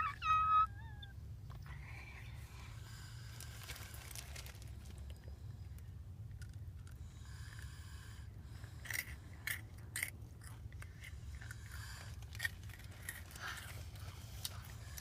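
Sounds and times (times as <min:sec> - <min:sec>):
crunchy chewing: 0:08.5 - 0:15.0.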